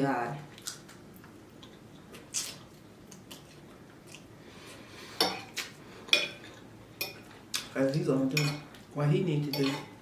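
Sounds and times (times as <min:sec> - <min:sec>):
person chewing: 0:00.5 - 0:07.8.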